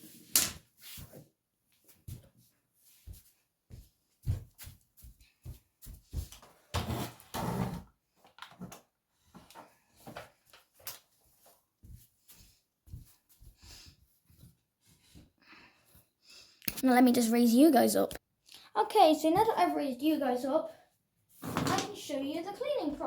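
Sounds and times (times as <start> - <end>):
objects knocking and clattering: 21.4 - 22.0.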